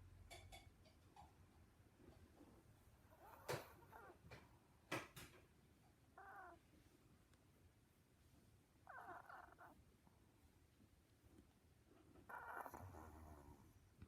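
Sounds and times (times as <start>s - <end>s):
dog squeaky snores: 3.1s - 4.2s, 6.2s - 6.6s, 8.8s - 9.8s, 12.2s - 13.7s.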